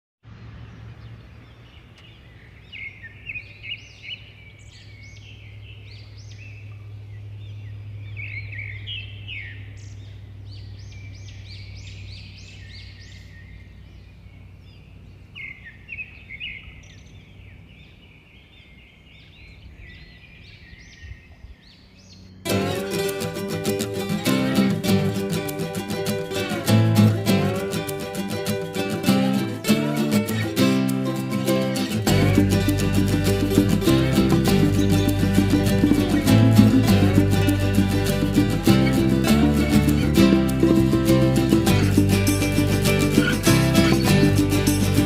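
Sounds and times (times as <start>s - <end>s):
songbirds chirping: 0.2s - 45.0s
acoustic guitar music: 22.5s - 45.0s.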